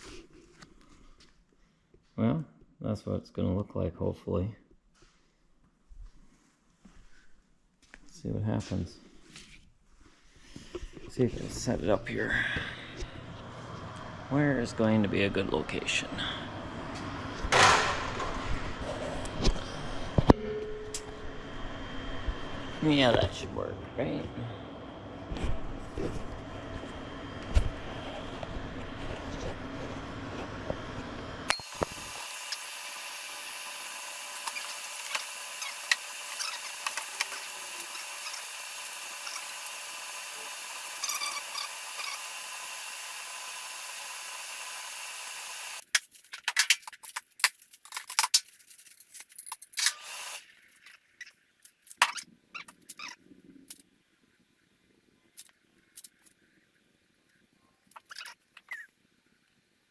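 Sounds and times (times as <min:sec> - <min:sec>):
metal parts and tools clinking: 0:45.9 - 0:50.0.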